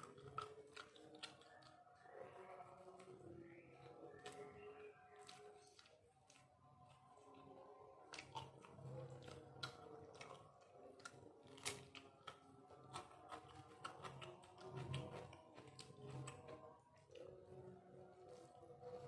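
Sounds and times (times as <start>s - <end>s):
mouth clicks and smacks eating: 0.0s - 3.2s, 4.1s - 17.5s.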